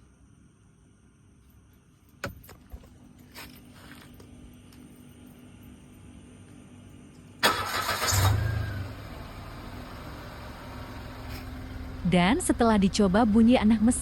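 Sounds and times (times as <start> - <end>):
car engine revving then idling: 7.4 - 14.0.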